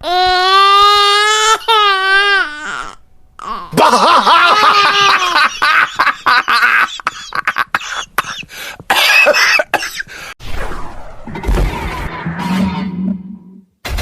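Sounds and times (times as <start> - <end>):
person coughing: 7.1 - 10.1.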